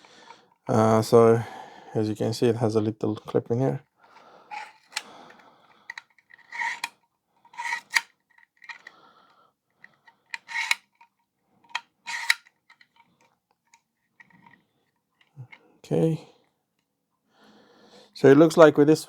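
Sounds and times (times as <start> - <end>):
plastic nozzle rubbing and scraping: 4.5 - 6.9, 7.5 - 8.9, 10.3 - 11.0, 12.1 - 13.1.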